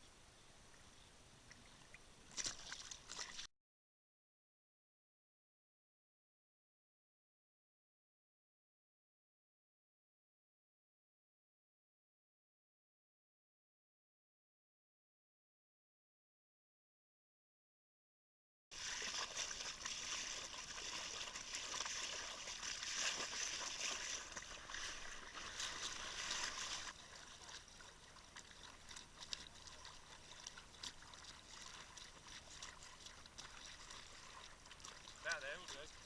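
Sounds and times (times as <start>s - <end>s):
water rushing along a boat hull: 18.7s - 36.0s.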